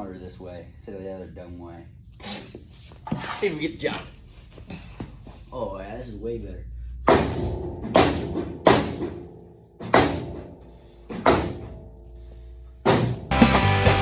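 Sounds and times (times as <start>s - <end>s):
hammer blows on sheet metal: 7.1s - 13.7s.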